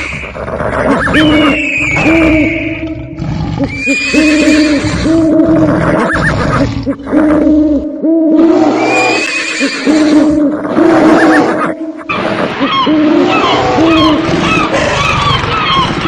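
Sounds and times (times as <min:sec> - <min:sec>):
animal cries overlapping: 0:03.7 - 0:08.0, 0:08.6 - 0:16.0.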